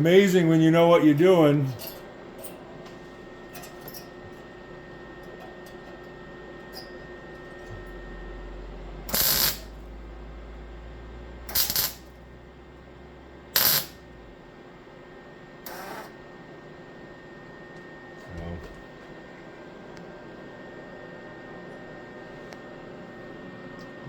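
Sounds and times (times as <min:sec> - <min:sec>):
low hum: 0:00.0 - 0:14.9
welding arc crackle: 0:09.1 - 0:09.8, 0:11.5 - 0:12.1, 0:13.6 - 0:14.0.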